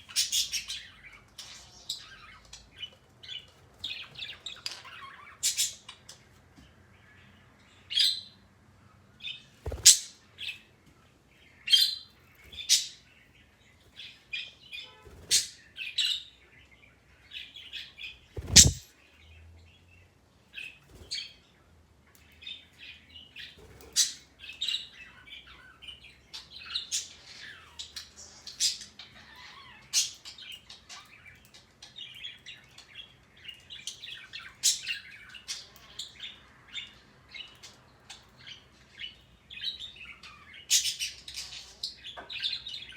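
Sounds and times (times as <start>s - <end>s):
parrot chirping and calling: 18.4s - 18.8s.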